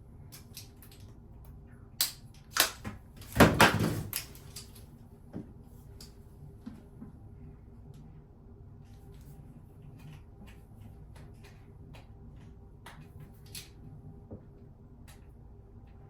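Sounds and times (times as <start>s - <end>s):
low room hum: 0.0s - 16.0s.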